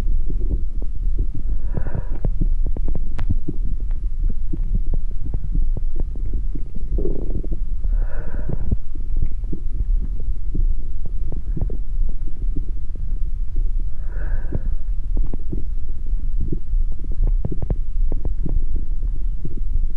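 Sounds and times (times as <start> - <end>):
heart sounds with low rumble: 0.0 - 19.9
breathing: 1.4 - 2.6, 6.9 - 10.0, 11.3 - 11.9, 13.9 - 15.6.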